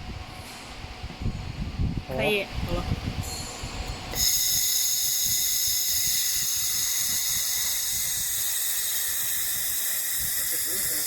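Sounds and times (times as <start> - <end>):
thin high whining tones: 3.2 - 11.0
laser welding machine hissing: 4.1 - 11.0.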